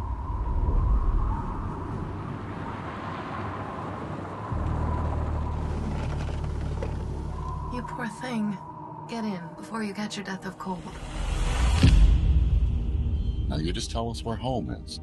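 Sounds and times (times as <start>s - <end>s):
car engine idling: 4.5s - 7.7s.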